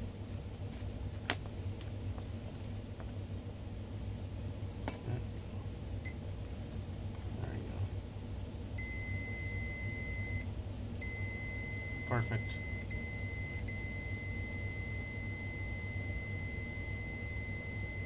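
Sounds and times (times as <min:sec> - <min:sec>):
multimeter continuity beep: 0:08.8 - 0:18.0.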